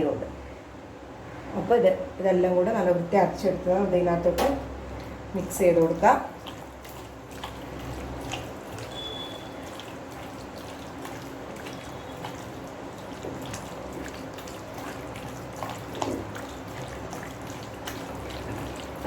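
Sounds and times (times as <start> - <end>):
wet squelching of hand mixing: 4.8 - 19.0.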